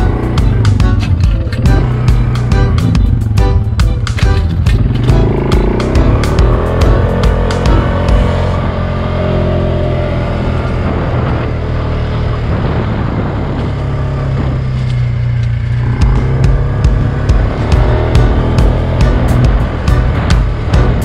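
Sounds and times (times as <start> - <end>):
motorbike engine running: 0.0 - 21.0.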